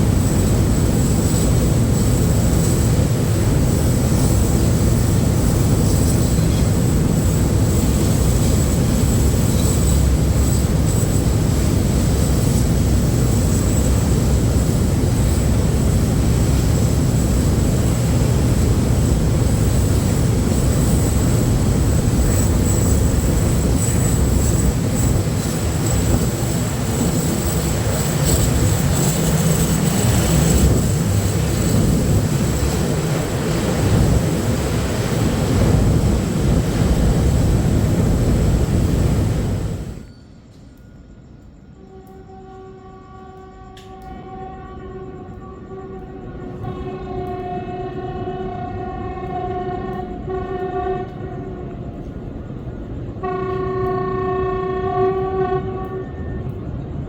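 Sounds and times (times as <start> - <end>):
diesel locomotive rumbling: 0.0 - 40.1.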